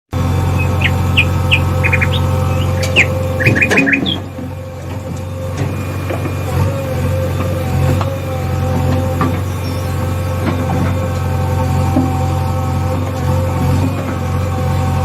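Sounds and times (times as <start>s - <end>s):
low motor-like hum: 0.2s - 15.0s
small birds chirping: 0.4s - 4.4s, 9.3s - 10.3s.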